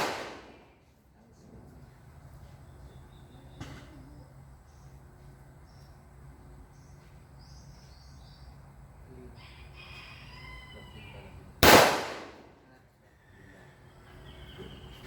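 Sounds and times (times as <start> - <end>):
gunshot: 0.0 - 0.6, 11.6 - 12.4.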